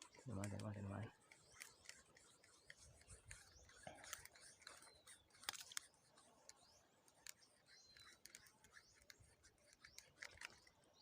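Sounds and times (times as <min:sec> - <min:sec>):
thin high chirping glides: 0:00.0 - 0:11.0
faint sharp clicks: 0:00.4 - 0:00.8.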